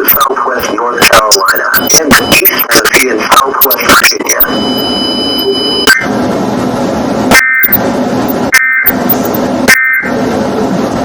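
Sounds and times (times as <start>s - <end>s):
harsh distorted noise: 0.0s - 11.0s
shrill warbling digital tone bursts: 7.3s - 7.8s, 8.5s - 10.2s.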